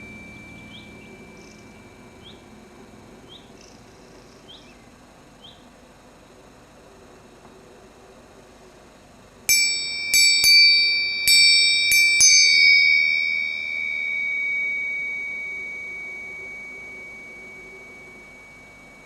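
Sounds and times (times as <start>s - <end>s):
small bell ringing: 0.0s - 2.4s, 9.5s - 19.0s.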